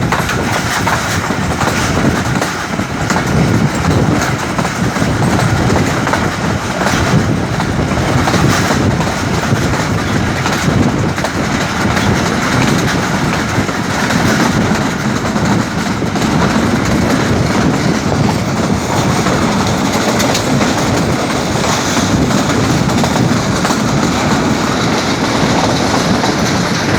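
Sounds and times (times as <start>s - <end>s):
train rumbling: 0.0s - 26.9s
wheels clicking over rail joints: 0.0s - 26.9s.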